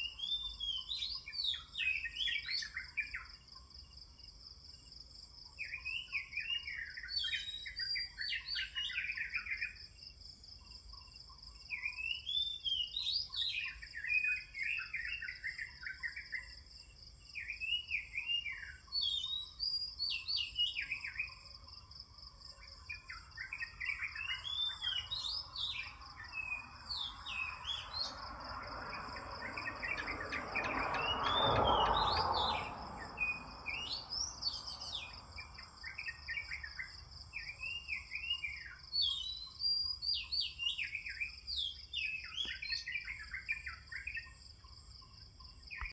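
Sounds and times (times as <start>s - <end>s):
bird singing whistled phrases: 0.0s - 3.3s, 5.6s - 9.8s, 11.7s - 16.5s, 17.4s - 21.4s, 23.0s - 28.2s, 29.4s - 35.2s, 35.8s - 44.4s.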